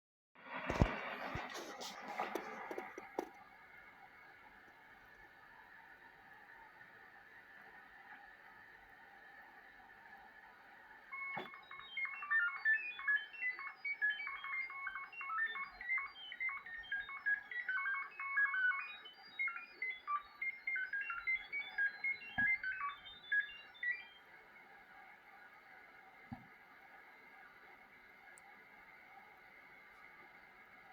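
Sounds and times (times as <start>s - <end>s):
radio band hiss: 0.4s - 14.0s
radio beeping tones: 0.7s - 3.3s, 11.2s - 24.1s
radio click: 0.7s - 3.4s, 11.2s - 11.6s.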